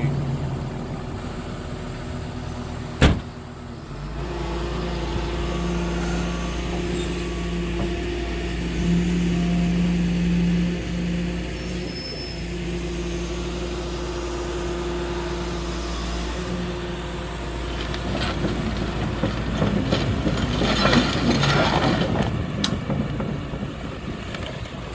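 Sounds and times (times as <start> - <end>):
excavator diesel engine hum: 0.0 - 24.9
metallic clattering and clanking: 18.1 - 24.7.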